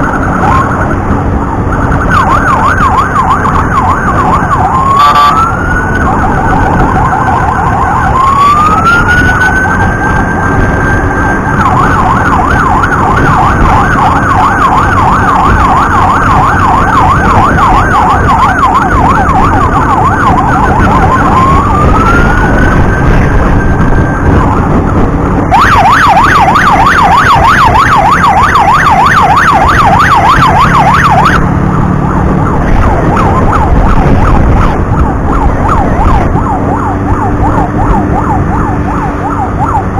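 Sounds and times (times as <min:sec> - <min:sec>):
electronic siren wailing and yelping: 0:00.0 - 0:39.9
road and engine noise: 0:00.0 - 0:39.9.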